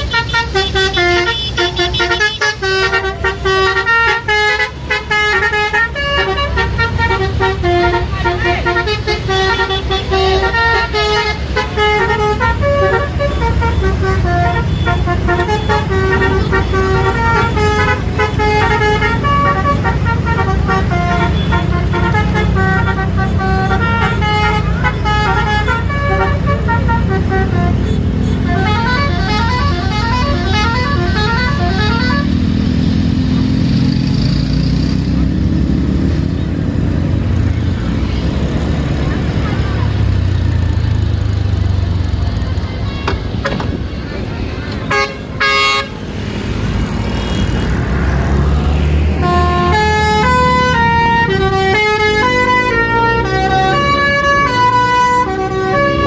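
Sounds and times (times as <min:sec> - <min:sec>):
bus musical horn playing tune: 0:00.0 - 0:32.9, 0:44.8 - 0:46.1, 0:48.6 - 0:56.0.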